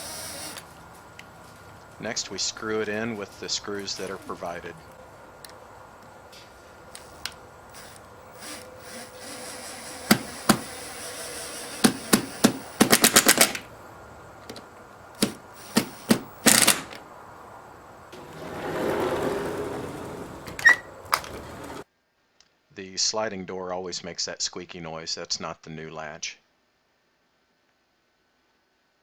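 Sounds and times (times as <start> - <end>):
sliding door squeaking on track: 3.7 - 4.9, 18.1 - 21.9.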